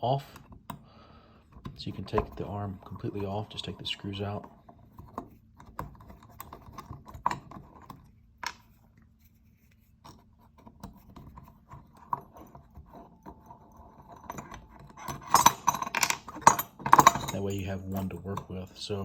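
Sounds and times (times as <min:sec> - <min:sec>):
screwdriver clicking and scraping: 0:09.9 - 0:18.2
small metal parts clinking: 0:12.0 - 0:19.0.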